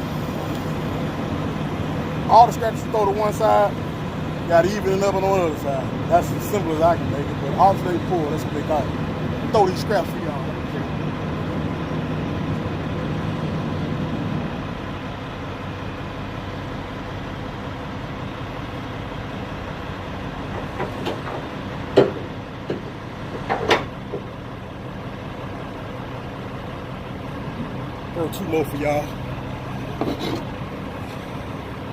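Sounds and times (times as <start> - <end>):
engine hum: 0.0 - 31.9.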